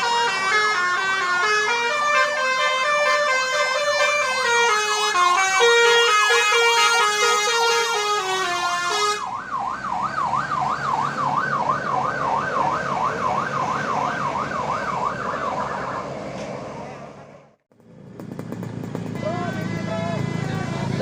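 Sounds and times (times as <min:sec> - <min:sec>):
musical horn melody: 0:00.0 - 0:09.3
siren warble: 0:09.2 - 0:16.2.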